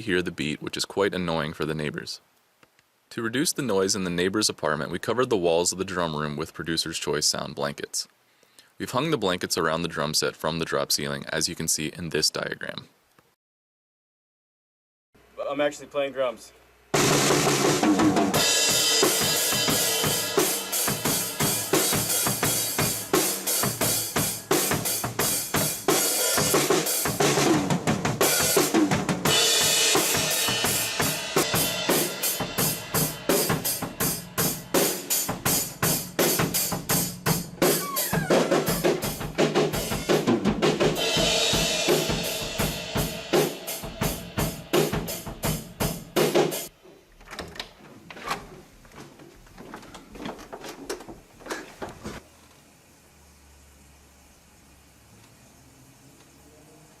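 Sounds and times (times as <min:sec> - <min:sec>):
drum kit groove: 0:16.9 - 0:46.7.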